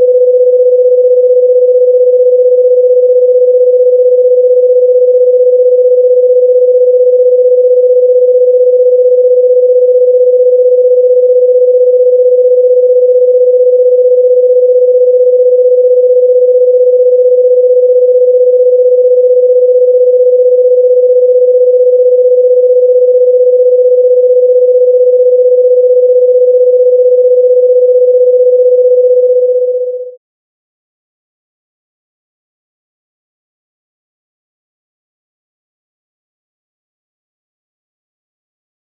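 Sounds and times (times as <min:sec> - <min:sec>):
steady sine-wave tone: 0:00.0 - 0:30.2.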